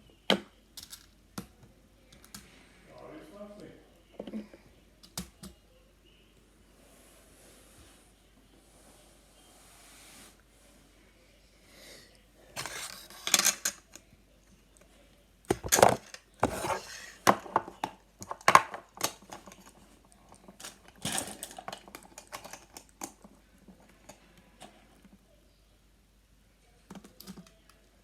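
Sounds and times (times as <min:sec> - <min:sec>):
plastic puzzles clacking: 0:00.3 - 0:01.6, 0:12.6 - 0:14.0, 0:15.5 - 0:24.8.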